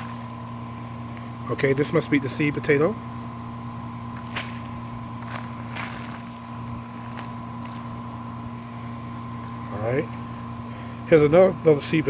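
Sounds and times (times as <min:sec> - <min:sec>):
mechanical hum with whine: 0:00.0 - 0:12.0
hands sifting through soil: 0:04.2 - 0:08.0.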